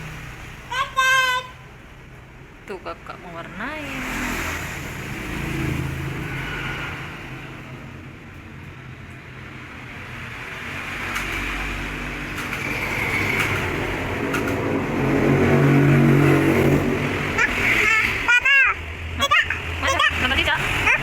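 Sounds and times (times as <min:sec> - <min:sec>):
vehicle engine humming: 0:07.9 - 0:21.0.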